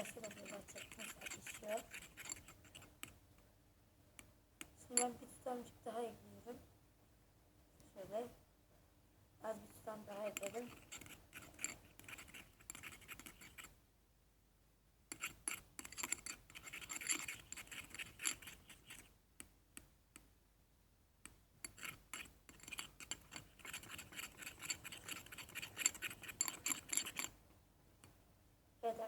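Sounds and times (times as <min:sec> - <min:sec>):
teaspoon scraping slime on plate: 0:00.0 - 0:03.2, 0:09.6 - 0:13.7, 0:15.1 - 0:19.1, 0:21.6 - 0:27.4.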